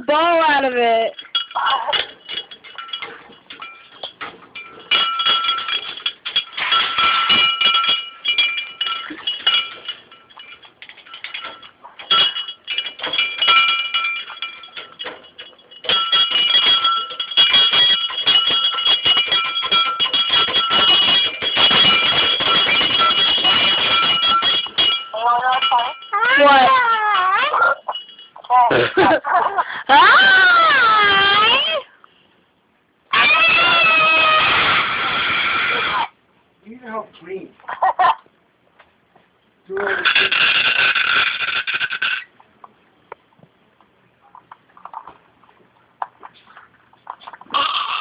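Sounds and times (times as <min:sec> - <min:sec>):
jangling clinking toy rattle: 0:01.0 - 0:29.5
steady ringing tone: 0:01.1 - 0:29.5.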